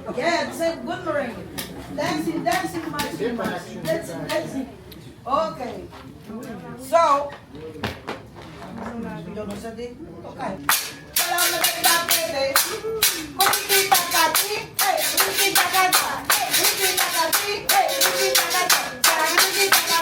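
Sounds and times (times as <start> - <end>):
merengue music: 10.6 - 20.0.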